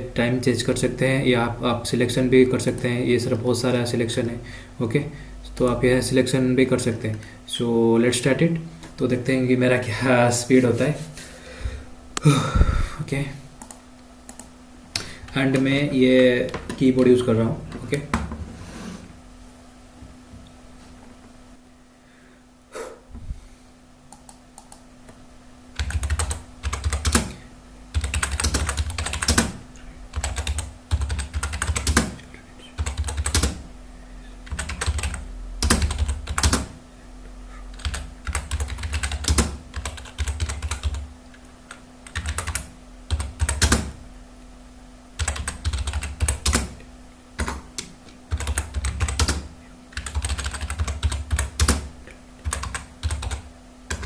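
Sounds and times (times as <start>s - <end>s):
faint steady hum: 0.0s - 54.0s
typing on computer keyboard: 25.8s - 27.3s, 27.9s - 32.1s, 32.8s - 33.6s, 34.5s - 36.7s, 37.8s - 41.0s, 41.7s - 43.9s, 45.2s - 46.7s, 47.4s - 54.0s.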